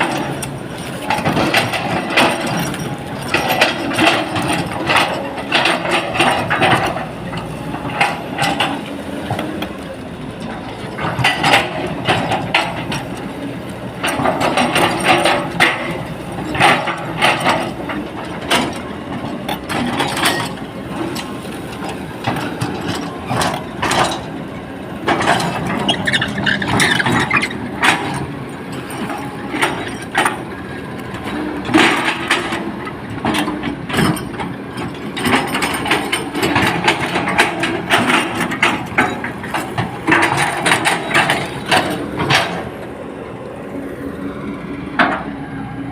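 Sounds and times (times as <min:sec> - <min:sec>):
metallic clanks and scrapes: 0:00.0 - 0:09.7, 0:25.1 - 0:30.4, 0:31.2 - 0:42.7
excavator diesel engine: 0:00.0 - 0:45.9.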